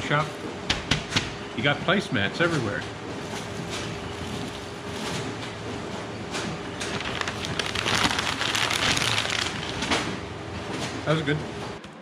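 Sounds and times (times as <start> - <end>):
paper machine rattling clicks: 6.8 - 10.2.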